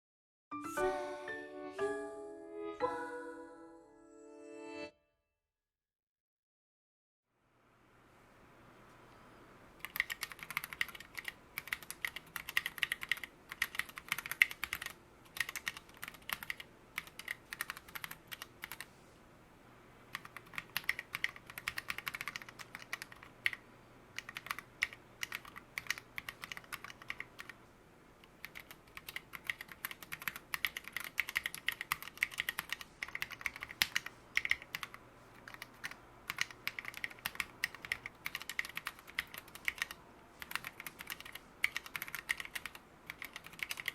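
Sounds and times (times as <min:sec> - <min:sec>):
mechanical keyboard typing: 0:09.8 - 0:18.9, 0:20.1 - 0:23.6, 0:24.2 - 0:27.6, 0:28.2 - 0:43.9.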